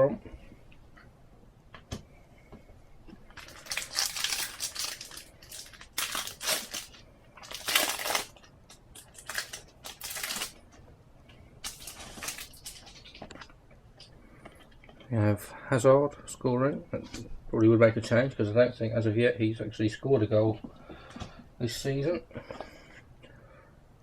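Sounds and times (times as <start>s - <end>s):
foil packet tearing and crinkling: 3.4s - 10.6s, 11.6s - 13.2s.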